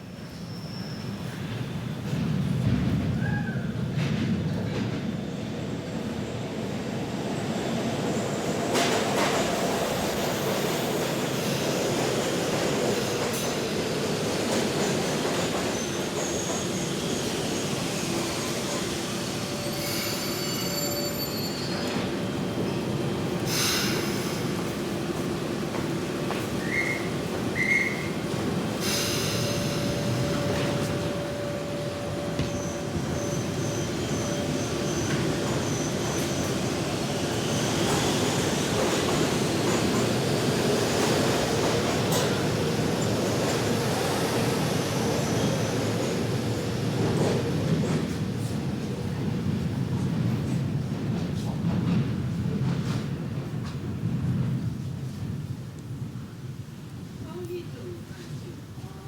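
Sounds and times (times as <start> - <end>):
train wheels rumbling on track: 0.0 - 59.0
wheels squealing: 26.6 - 28.2.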